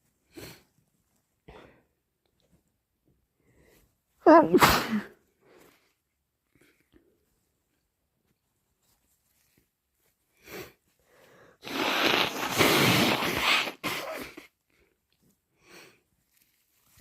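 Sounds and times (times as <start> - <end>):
person blowing congested nose: 10.4 - 14.6.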